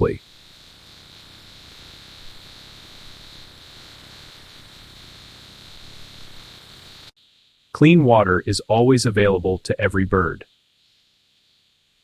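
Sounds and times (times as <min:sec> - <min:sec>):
hiss: 0:00.0 - 0:07.3, 0:10.4 - 0:12.0.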